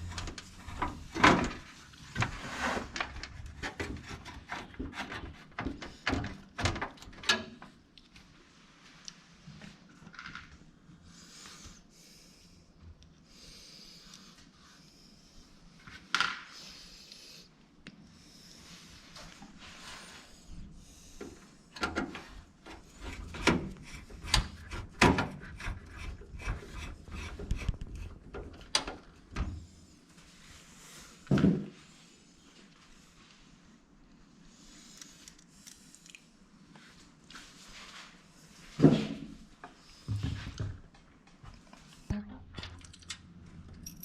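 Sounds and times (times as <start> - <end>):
soft rubbing and scraping: 0.0 - 5.6, 18.3 - 28.6, 36.7 - 40.5.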